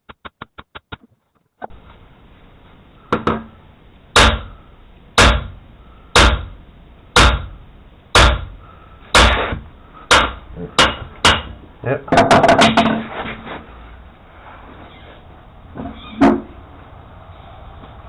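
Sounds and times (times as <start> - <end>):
hammer blows on steel: 4.2 - 4.6, 5.2 - 6.6, 7.2 - 11.6.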